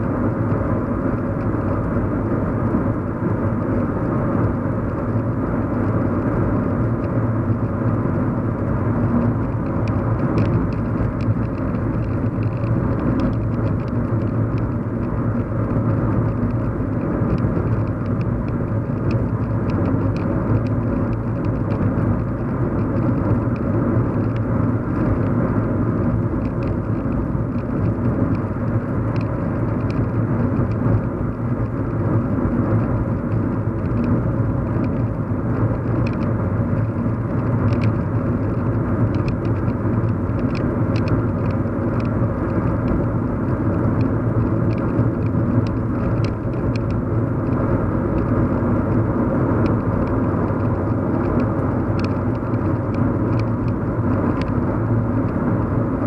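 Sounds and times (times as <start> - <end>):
car cabin hum and road rumble: 0.0 - 56.0
faint light ticks: 9.2 - 22.0, 26.4 - 31.8, 33.8 - 34.2, 34.8 - 43.1, 43.9 - 48.4, 49.6 - 54.6.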